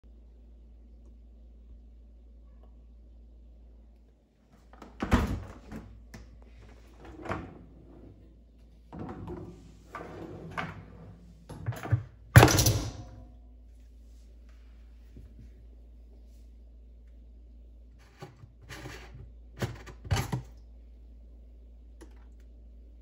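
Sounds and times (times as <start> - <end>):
dishwasher door knocks and clatters: 5.0 - 5.8, 11.5 - 13.2.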